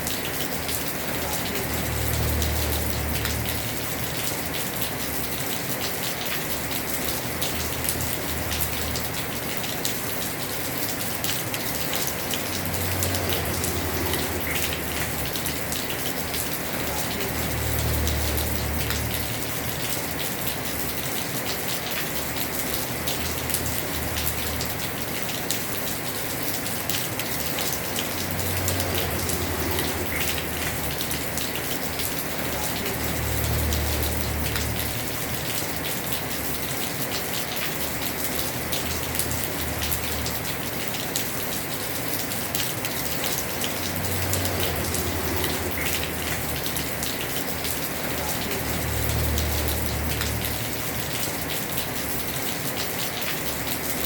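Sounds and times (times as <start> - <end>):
heavy rain on a roof: 0.0 - 54.0.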